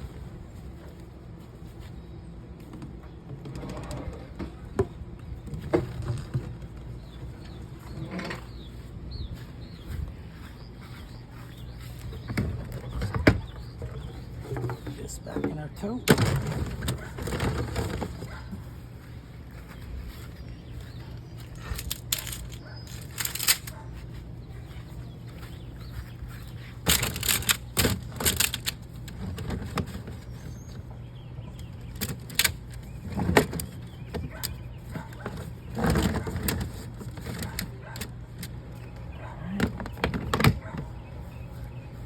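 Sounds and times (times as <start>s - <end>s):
steady low hum: 0.0s - 42.0s
gear clunking and scraping: 2.5s - 42.0s.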